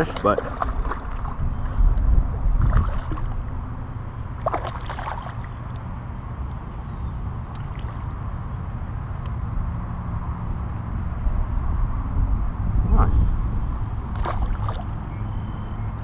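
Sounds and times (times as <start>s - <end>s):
knocks or splashes: 0.0s - 1.4s, 2.6s - 3.4s, 4.4s - 5.5s, 14.1s - 14.9s
wind rumbling on microphone: 0.0s - 16.0s.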